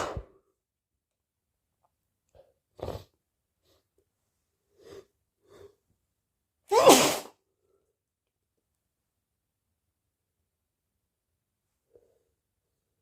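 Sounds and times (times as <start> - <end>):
person sneezing: 6.7 - 7.4.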